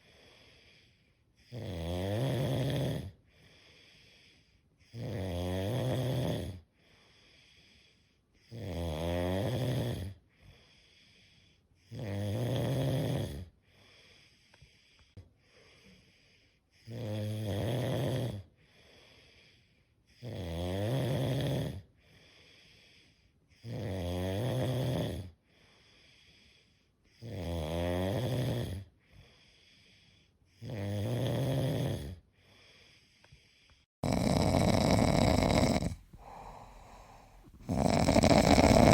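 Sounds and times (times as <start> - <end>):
quiet breathing: 0.0 - 1.6, 3.1 - 4.9, 6.6 - 8.6, 10.1 - 11.9, 13.4 - 16.8, 18.5 - 20.1, 21.9 - 23.6, 25.3 - 27.2, 28.8 - 30.6, 32.2 - 38.9
buzzing snores: 1.4 - 3.2, 4.8 - 6.7, 8.4 - 10.2, 11.8 - 13.5, 16.8 - 18.5, 20.1 - 21.9, 23.5 - 25.4, 26.5 - 28.9, 29.7 - 32.2, 34.0 - 38.9.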